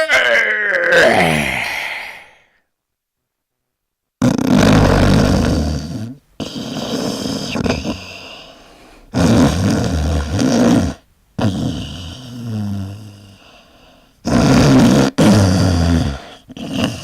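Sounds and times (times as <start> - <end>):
loud rough snoring: 4.2 - 8.4, 9.0 - 13.5, 14.2 - 17.0
low drone: 4.6 - 5.8.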